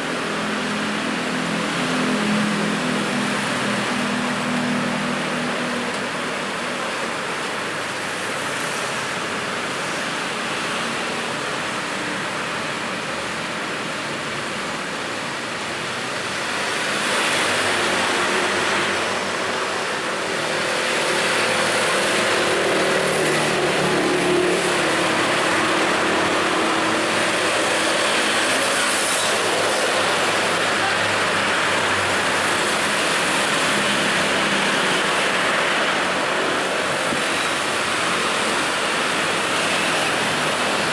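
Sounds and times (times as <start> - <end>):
passing vehicles: 0.0 - 40.9.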